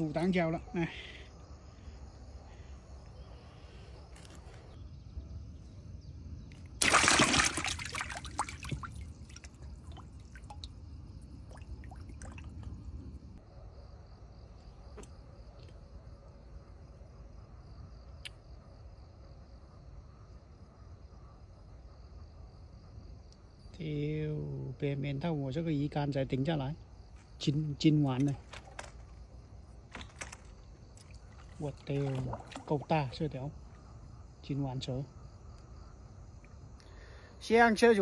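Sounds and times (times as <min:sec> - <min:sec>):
crickets chirping: 0:00.0 - 0:38.0
water trickling and dripping: 0:06.5 - 0:13.4, 0:30.0 - 0:33.9
loud water splash: 0:06.8 - 0:10.7.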